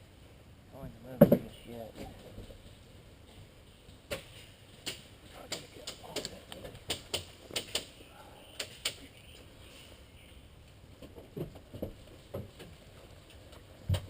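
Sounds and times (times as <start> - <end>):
sharp clicks and snaps: 4.8 - 9.2.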